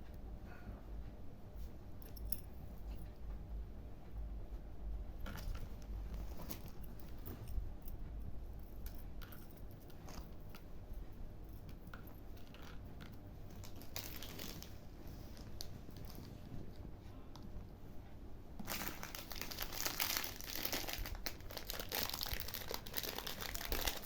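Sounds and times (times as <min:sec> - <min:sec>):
packaging rustle: 0:05.3 - 0:07.4, 0:13.5 - 0:16.4, 0:18.6 - 0:24.0
packaging crinkling: 0:13.5 - 0:14.8, 0:18.6 - 0:24.0.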